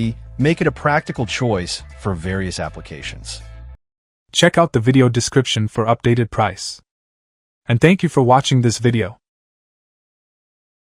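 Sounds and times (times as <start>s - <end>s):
synthesized narrator voice: 0.0s - 3.4s, 4.4s - 6.8s, 7.7s - 9.2s.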